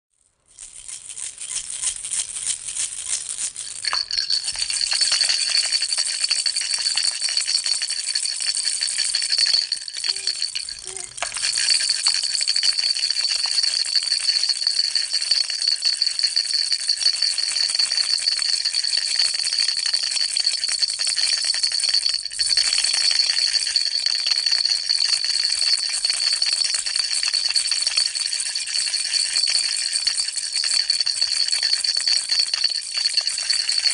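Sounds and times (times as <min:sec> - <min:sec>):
baby rattle shaken: 0:00.5 - 0:33.9
steady high ringing: 0:03.7 - 0:18.8, 0:22.0 - 0:33.9.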